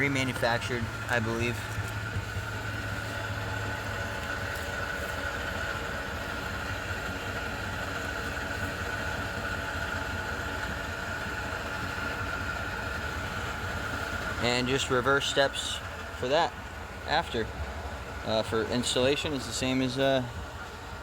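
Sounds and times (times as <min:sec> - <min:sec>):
vehicle engine idling: 0:00.0 - 0:21.0.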